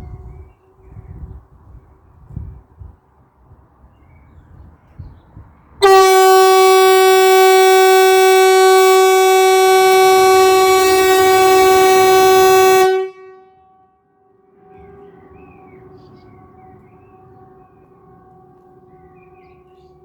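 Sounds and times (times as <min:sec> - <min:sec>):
loud low air horn blast: 0:05.8 - 0:15.2
fainter distant horn: 0:05.8 - 0:20.0.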